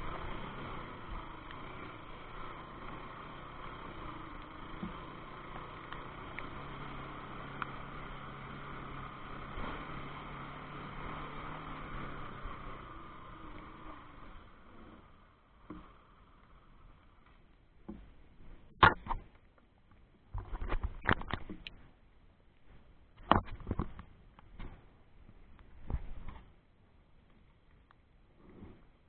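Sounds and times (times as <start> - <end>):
motorcycle engine running: 0.0 - 18.1
continuous hiss: 0.0 - 29.0
low steady hum: 0.0 - 29.0.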